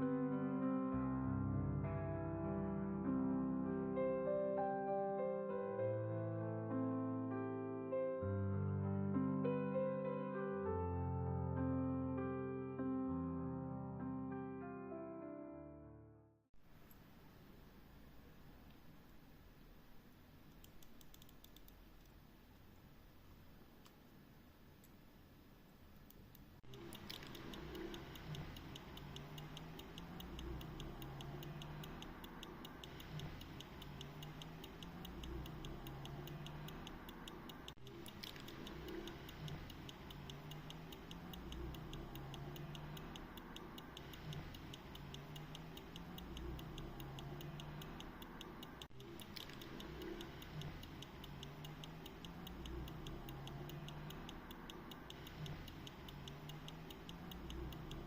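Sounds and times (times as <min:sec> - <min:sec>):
pocket watch ticking: 0:20.5 - 0:22.1, 0:26.6 - 0:58.0.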